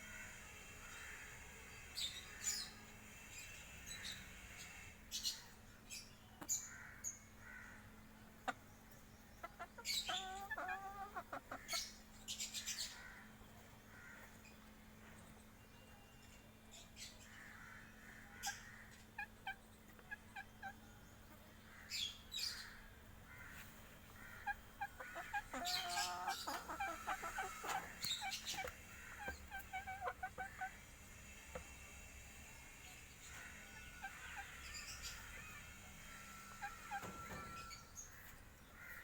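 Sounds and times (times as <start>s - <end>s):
chickens clucking: 7.8s - 15.4s, 18.0s - 39.0s.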